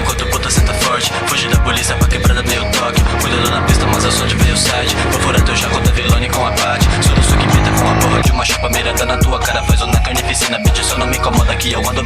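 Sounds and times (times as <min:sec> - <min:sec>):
rapping over a beat: 0:00.0 - 0:12.0
deep kick drums: 0:05.4 - 0:07.7.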